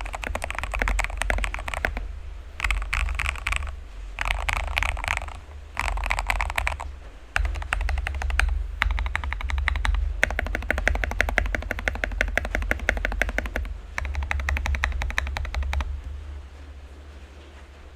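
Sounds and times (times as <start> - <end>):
fast typing on mechanical keyboard: 0.0 - 16.1
steady low hum: 0.0 - 17.9.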